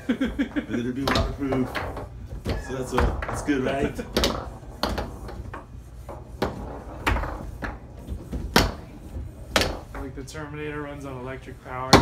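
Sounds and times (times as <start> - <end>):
foosball ball knocks: 0.8 - 10.0.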